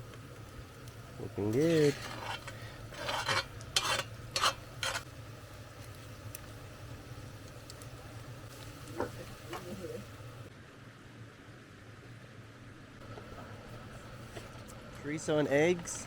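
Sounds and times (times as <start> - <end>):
food sizzling in a pan: 0.0 - 10.5
utensil scraping a pan: 1.4 - 5.1.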